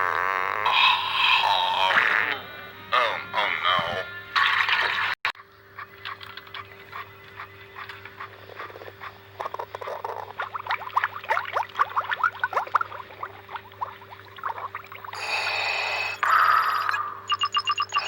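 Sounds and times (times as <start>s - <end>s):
stomach growling: 0.0s - 4.1s, 7.8s - 17.3s.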